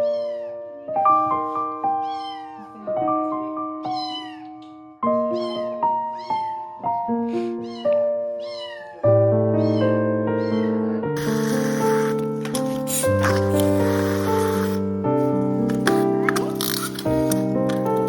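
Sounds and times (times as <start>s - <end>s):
kitten mewing: 0.0s - 0.6s, 2.0s - 2.9s, 3.8s - 4.6s, 5.3s - 6.6s, 7.4s - 14.8s
plucked background music: 7.4s - 18.0s.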